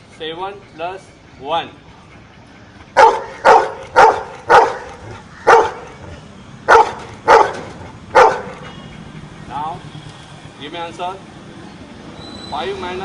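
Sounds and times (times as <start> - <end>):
dog barking: 3.0 - 6.1, 6.7 - 8.6.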